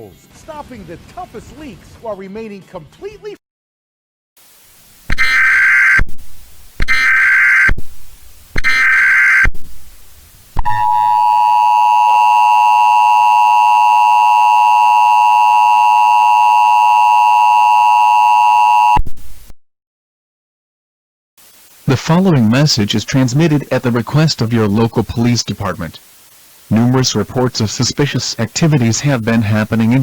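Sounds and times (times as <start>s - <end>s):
buzzy digital data tones: 5.0s - 7.8s, 8.5s - 9.6s, 10.5s - 19.0s
two-note electronic alert tone: 10.6s - 19.0s.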